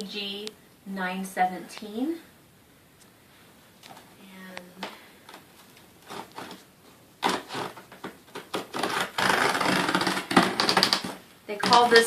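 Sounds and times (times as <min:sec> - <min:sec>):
cardboard scraping and rustling: 0:05.7 - 0:06.6, 0:07.2 - 0:12.0.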